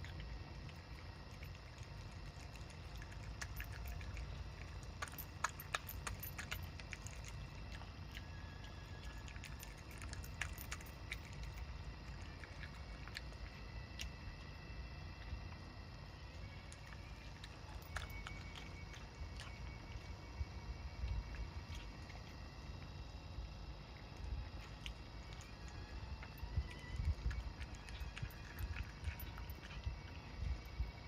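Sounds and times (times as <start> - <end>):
light clicks and clinks: 2.6 - 7.5, 9.3 - 11.7
wind rumble on microphone: 25.9 - 31.0.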